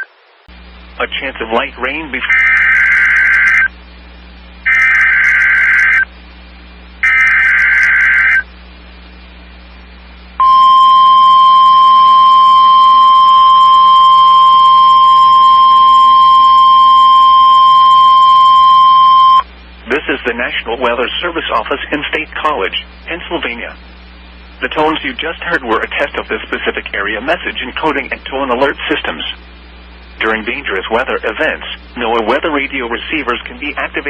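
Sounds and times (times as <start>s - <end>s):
buzzy digital data screech: 2.3s - 3.7s, 4.6s - 6.1s, 7.0s - 8.5s
high steady warning alarm tone: 2.3s - 3.7s, 4.6s - 6.1s, 7.0s - 8.5s, 10.4s - 19.5s.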